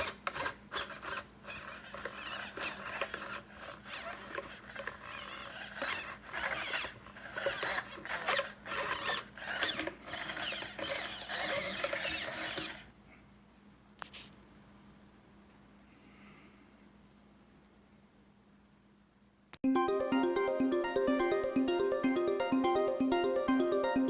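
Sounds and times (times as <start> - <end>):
mechanical rattling and scraping: 0.0 - 12.9.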